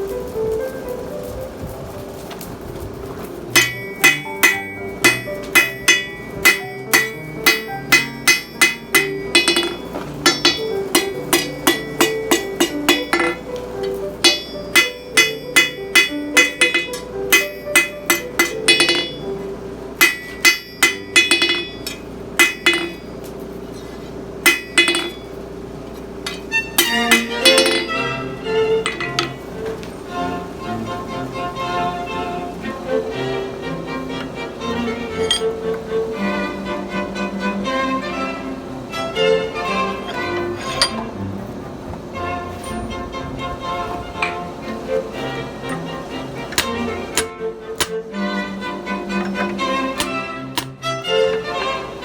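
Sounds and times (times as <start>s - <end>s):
background music: 3.2s - 23.0s, 26.3s - 52.0s
hammer ringing on anvil: 3.5s - 23.3s, 24.4s - 25.4s, 26.3s - 29.8s, 35.2s - 35.7s, 40.0s - 41.1s, 42.6s - 43.1s, 46.6s - 48.0s, 49.1s - 50.8s.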